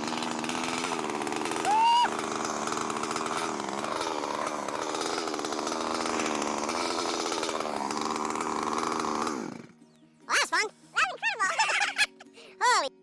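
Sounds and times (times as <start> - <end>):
chainsaw cutting log: 0.0 - 9.9.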